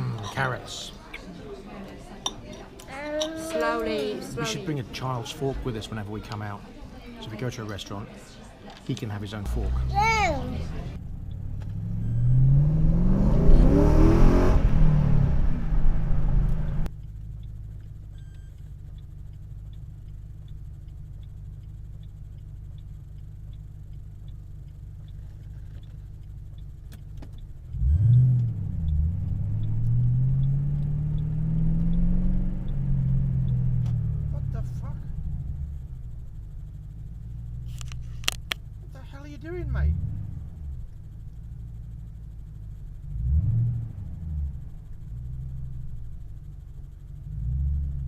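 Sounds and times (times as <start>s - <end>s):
car engine revving: 9.4s - 16.9s, 27.4s - 48.0s.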